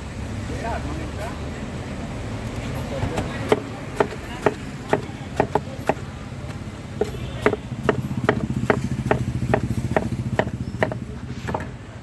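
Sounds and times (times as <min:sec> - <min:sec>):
knife chopping on wooden board: 0:03.1 - 0:11.8.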